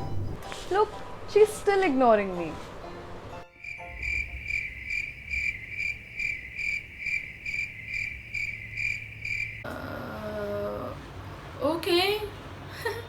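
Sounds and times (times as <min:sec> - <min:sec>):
cricket chirping: 0:03.6 - 0:09.7.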